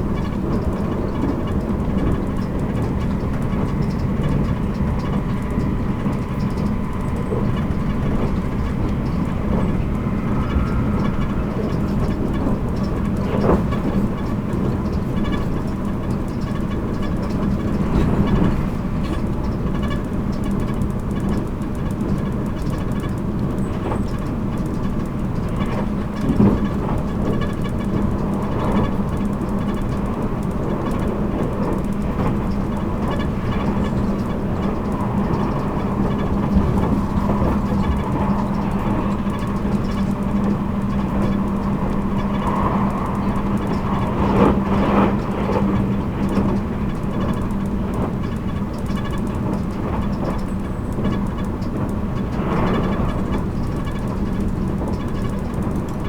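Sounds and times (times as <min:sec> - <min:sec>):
constant motor hum: 0:00.0 - 0:56.0
train wheels rumbling on rail: 0:00.0 - 0:56.0.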